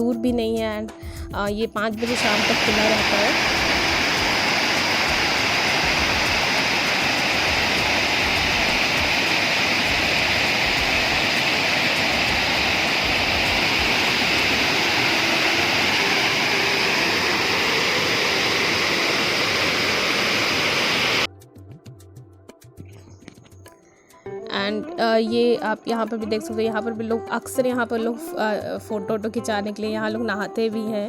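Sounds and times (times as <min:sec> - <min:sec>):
waterfall roaring: 0:02.0 - 0:21.3.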